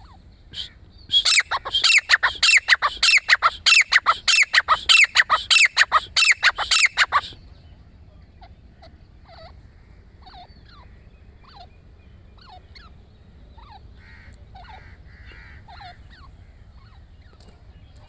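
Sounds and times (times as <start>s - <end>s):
francolin calling: 0.0s - 7.4s.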